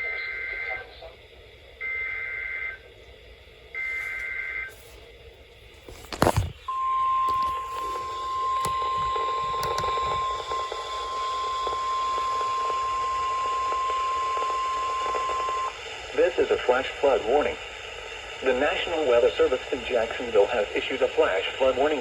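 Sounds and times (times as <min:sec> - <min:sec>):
radio hiss: 0:00.0 - 0:03.0, 0:03.7 - 0:22.0
steady warning alarm tone: 0:06.7 - 0:15.8.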